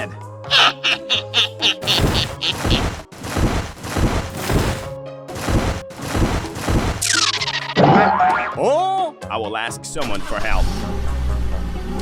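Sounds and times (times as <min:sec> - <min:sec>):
percussive hits: 0:01.8 - 0:07.2.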